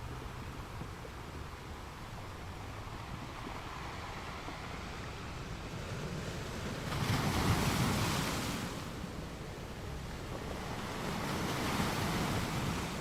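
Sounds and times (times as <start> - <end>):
waves breaking on beach: 3.1 - 13.0.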